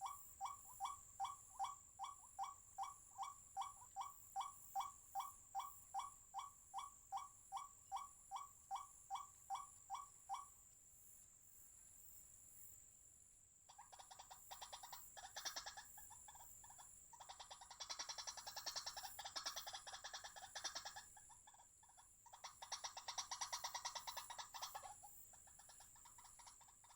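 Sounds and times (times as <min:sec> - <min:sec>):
bird croaking call: 0:17.2 - 0:21.1, 0:22.3 - 0:26.9
fast chattering croaks: 0:17.2 - 0:21.6, 0:22.3 - 0:26.9.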